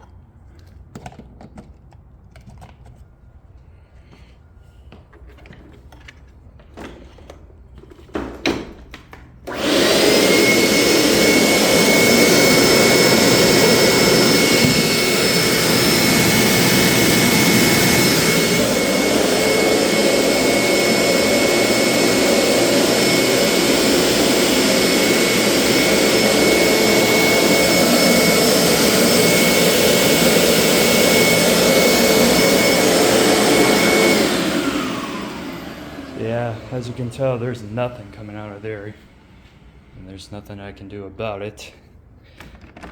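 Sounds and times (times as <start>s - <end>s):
carpet cleaner motor whining: 9.0s - 40.2s.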